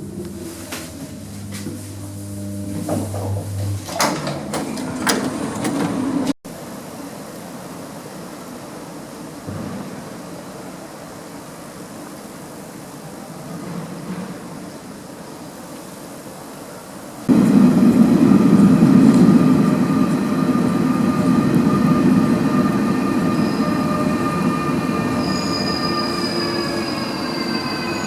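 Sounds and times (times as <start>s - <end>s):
steady whining tones: 0.0s - 6.4s
train rumbling: 0.0s - 6.4s, 17.3s - 28.0s
high wheel squeal: 19.4s - 28.0s.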